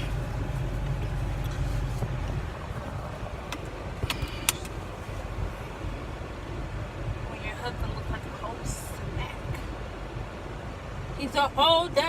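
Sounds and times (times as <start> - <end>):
car cabin low rumble: 0.0 - 12.0
seatbelt buckle clicks: 3.4 - 4.8.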